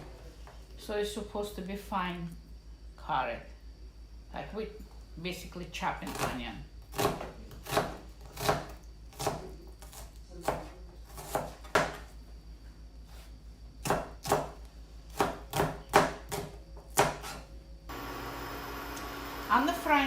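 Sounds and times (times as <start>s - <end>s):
knife chopping on wooden board: 6.9s - 12.0s, 13.8s - 17.4s.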